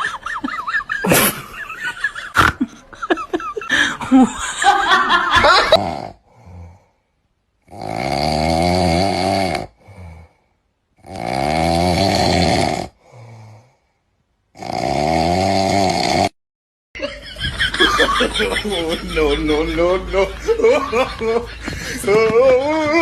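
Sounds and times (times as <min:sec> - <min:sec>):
loud rattling snores: 0:05.7 - 0:06.8, 0:07.6 - 0:10.4, 0:11.0 - 0:13.7, 0:14.5 - 0:16.4
quiet breaths: 0:06.2 - 0:07.3, 0:09.7 - 0:10.7, 0:13.0 - 0:14.2.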